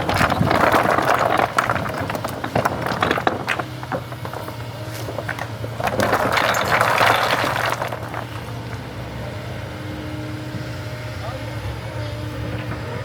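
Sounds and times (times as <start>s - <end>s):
gritty scraping and clinking: 0.0s - 9.0s
excavator engine running: 0.0s - 13.0s.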